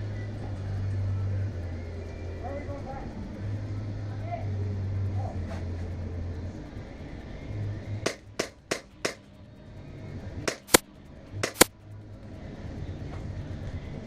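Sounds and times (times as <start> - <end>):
airsoft gun shots: 10.5 - 10.8, 11.4 - 11.7.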